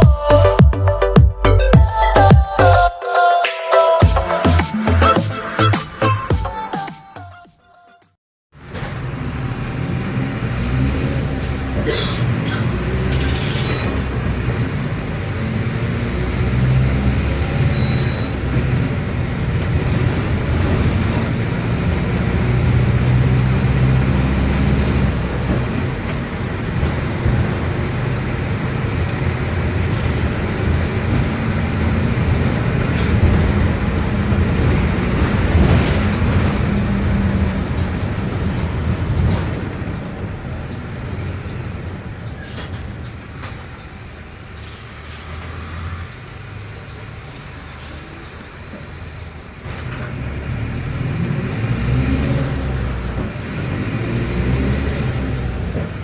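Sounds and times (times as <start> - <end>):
bus diesel engine running: 8.6 - 56.0.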